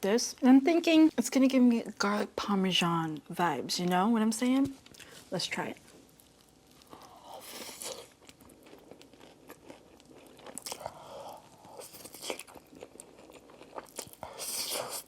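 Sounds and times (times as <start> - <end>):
crunchy chewing: 6.1 - 15.0.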